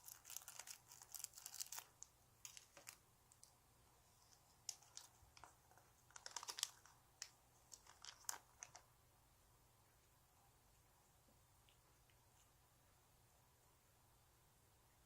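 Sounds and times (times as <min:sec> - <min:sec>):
hands handling a squishy toy: 0:04.3 - 0:08.8.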